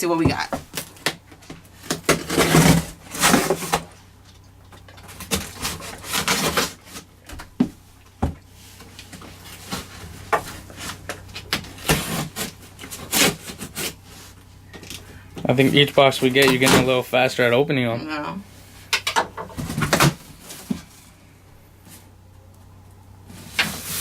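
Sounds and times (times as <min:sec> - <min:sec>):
cardboard and tape tearing: 0:00.6 - 0:04.0, 0:05.0 - 0:07.1, 0:09.0 - 0:14.4, 0:15.5 - 0:17.0, 0:19.6 - 0:20.9, 0:23.3 - 0:24.0.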